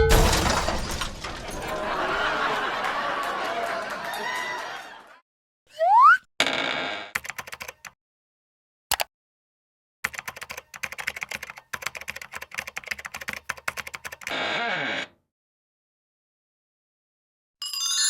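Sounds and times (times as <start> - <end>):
rapid keyboard clicking: 7.2 - 8.0, 10.0 - 14.3.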